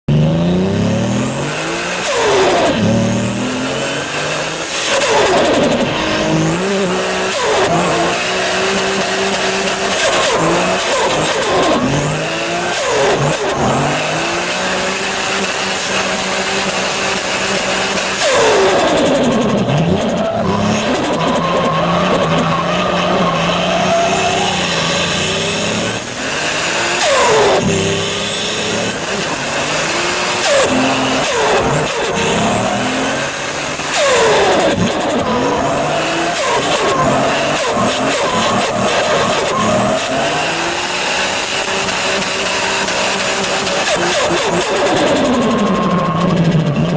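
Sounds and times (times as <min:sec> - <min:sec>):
car engines revving: 0:00.0 - 0:46.9.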